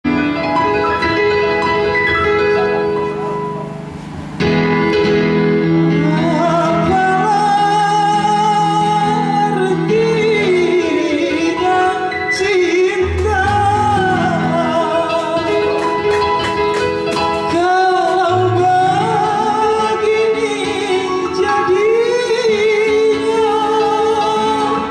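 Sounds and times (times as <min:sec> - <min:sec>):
chords and bass accompaniment: 0:00.0 - 0:24.9
person singing with vibrato: 0:05.8 - 0:16.1, 0:17.3 - 0:24.9.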